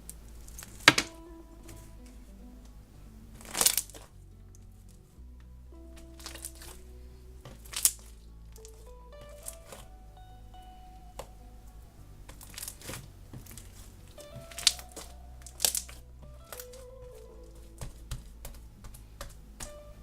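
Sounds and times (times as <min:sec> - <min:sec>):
soft background music: 0:00.0 - 0:20.0
slime squished by hand: 0:03.4 - 0:04.1, 0:12.3 - 0:19.8.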